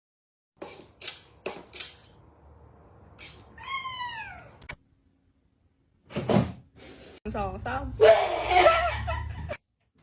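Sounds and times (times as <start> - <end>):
cat meowing: 3.6 - 4.8.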